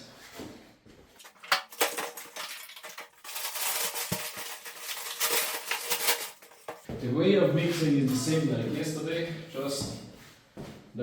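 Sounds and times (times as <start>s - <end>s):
mixing tool scraping and clinking: 1.2s - 6.9s.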